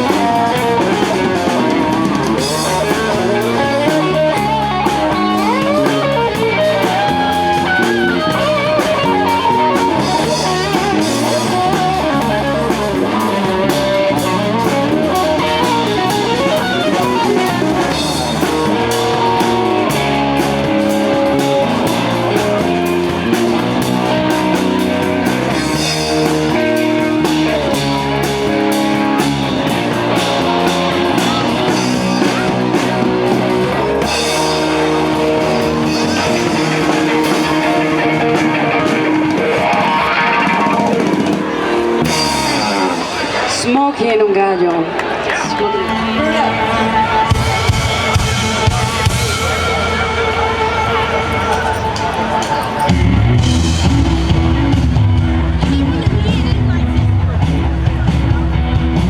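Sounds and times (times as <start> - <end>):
drum kit beat: 0.0 - 43.9, 47.2 - 59.0
guitar: 0.0 - 59.0
rock band playing: 0.0 - 59.0.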